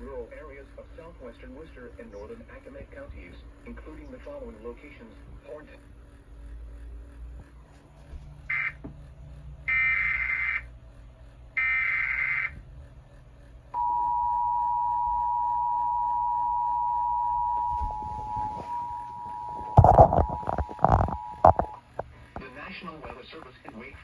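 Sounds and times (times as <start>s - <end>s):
two-tone attention signal: 13.8s - 21.8s
raspy digital data warble: 17.6s - 21.8s.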